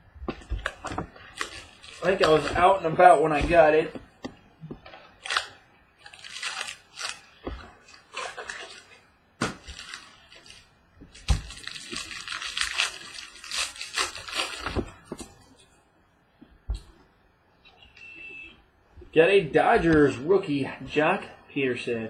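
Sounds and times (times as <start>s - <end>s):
cards rustling: 0.3s - 15.7s
wrapper crinkling and tearing: 0.4s - 4.0s, 4.8s - 15.4s.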